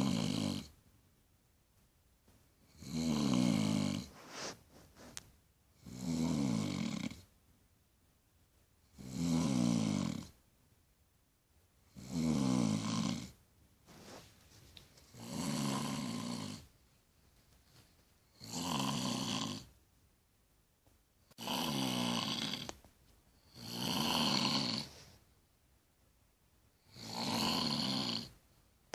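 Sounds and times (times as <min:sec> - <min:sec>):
woman snoring loudly: 0:00.0 - 0:00.7, 0:02.7 - 0:04.1, 0:05.8 - 0:07.2, 0:09.0 - 0:10.3, 0:11.9 - 0:13.3, 0:15.2 - 0:16.7, 0:18.4 - 0:19.7, 0:21.3 - 0:22.8, 0:23.4 - 0:24.9, 0:26.8 - 0:28.4
quiet breathing: 0:03.6 - 0:05.9, 0:12.8 - 0:16.8, 0:21.3 - 0:25.4.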